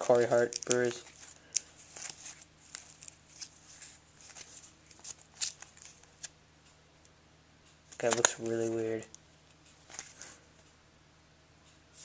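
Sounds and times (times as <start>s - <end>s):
trading cards sliding and clicking: 0.1s - 6.3s, 7.9s - 8.9s, 9.8s - 10.4s.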